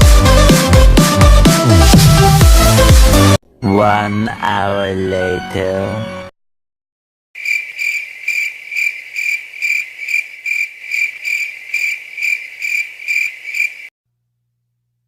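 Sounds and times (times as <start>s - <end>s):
crickets chirping: 7.4s - 13.9s.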